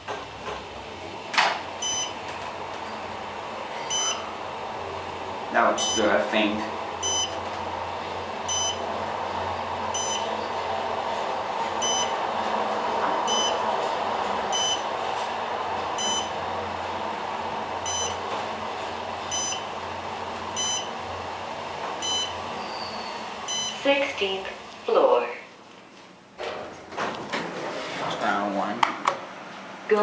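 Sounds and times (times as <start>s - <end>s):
hum and rush of elevator cab: 0.0s - 30.0s
short high elevator beep: 1.8s - 2.2s, 3.8s - 4.3s, 5.8s - 6.1s, 7.0s - 7.4s, 8.5s - 8.8s, 9.9s - 10.3s, 11.8s - 12.2s, 13.2s - 13.6s, 14.5s - 14.9s, 16.0s - 16.3s, 17.8s - 18.2s, 19.3s - 19.7s, 20.6s - 20.9s, 22.0s - 23.8s.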